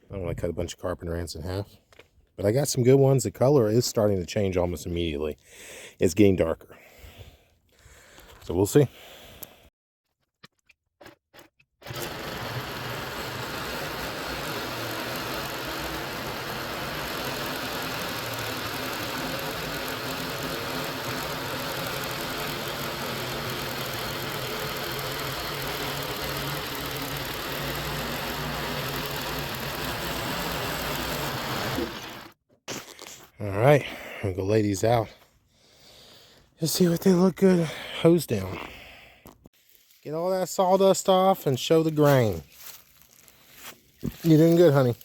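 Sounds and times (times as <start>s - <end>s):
gasoline engine running: 11.9s - 32.4s.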